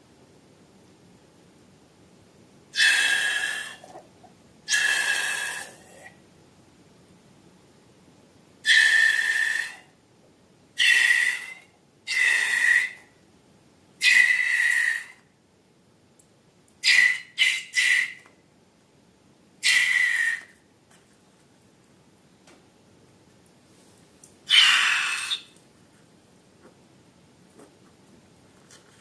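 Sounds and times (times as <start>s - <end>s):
air squealing out of balloon: 2.8s - 4.0s, 4.7s - 5.9s, 8.7s - 9.9s, 10.8s - 13.1s, 14.0s - 15.2s, 16.8s - 18.2s, 19.6s - 20.5s, 24.5s - 25.5s.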